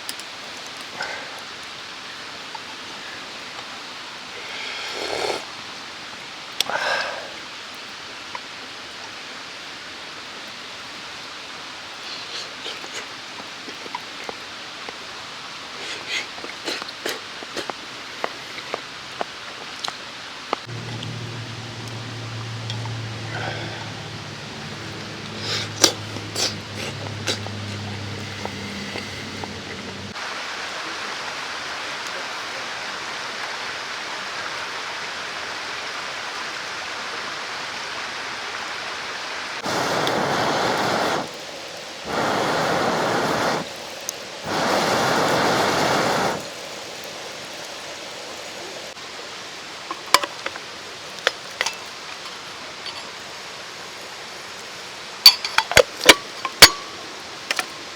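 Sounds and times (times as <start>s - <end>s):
mountain stream running: 0.0s - 57.9s
loud rushing water: 20.6s - 49.9s
low hum: 20.7s - 30.2s.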